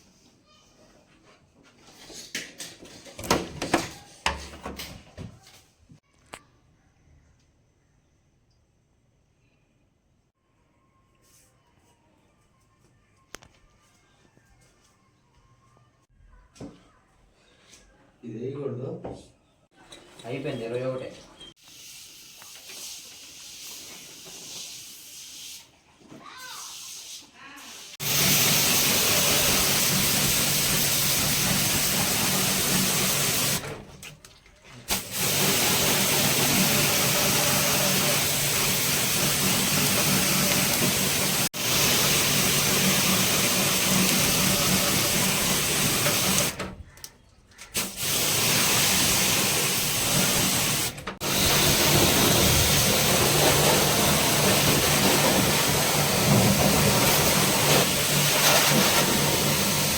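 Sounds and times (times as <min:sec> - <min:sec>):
water jet spraying hiss: 0:26.5 - 0:33.7, 0:34.9 - 0:46.6, 0:47.8 - 0:59.9
pressure washer motor hum: 0:28.0 - 0:33.8, 0:34.9 - 0:46.7, 0:47.8 - 0:59.9.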